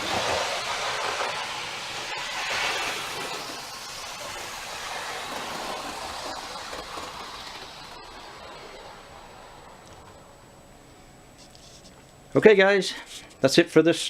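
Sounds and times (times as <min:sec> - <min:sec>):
model train wheels rumbling on rail: 0:00.0 - 0:10.6.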